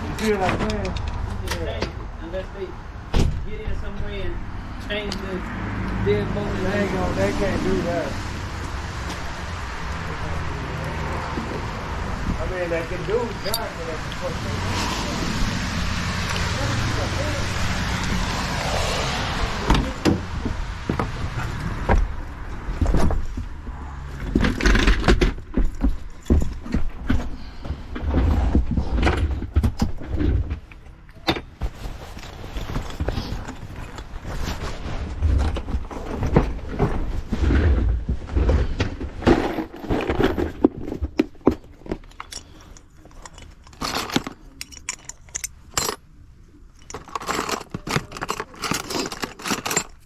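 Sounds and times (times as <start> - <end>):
rumbling handling noise: 0.0 - 50.0
metal lock parts clicking: 16.2 - 16.6, 41.9 - 46.1, 46.7 - 50.0
keys jangling: 42.1 - 46.1, 46.7 - 50.0.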